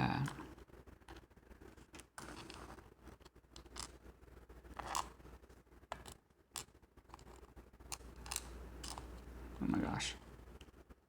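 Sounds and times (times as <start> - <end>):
small metal parts scraping and clicking: 5.9 - 9.2.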